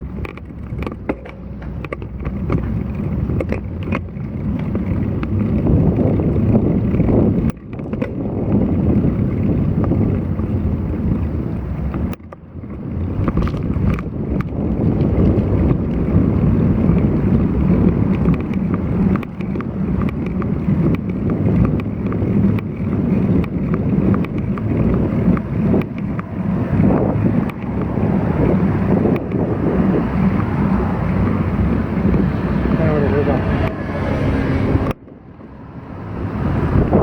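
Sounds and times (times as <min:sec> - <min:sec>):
strong wind buffeting microphone: 0:00.0 - 0:37.0
small clicks: 0:11.8 - 0:29.5.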